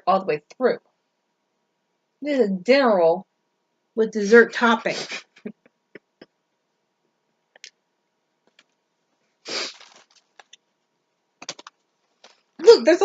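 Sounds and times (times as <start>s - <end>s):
breath through the nose: 9.4s - 10.0s.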